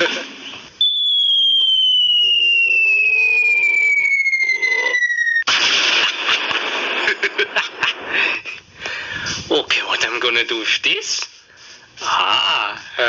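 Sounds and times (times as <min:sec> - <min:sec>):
cartoon falling whistle: 0:00.8 - 0:05.5
explosion burst: 0:00.8 - 0:08.3.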